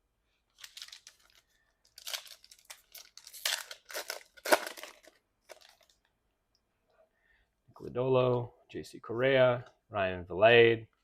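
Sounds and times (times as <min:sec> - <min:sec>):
wrapper tearing and crinkling: 0:00.6 - 0:06.0.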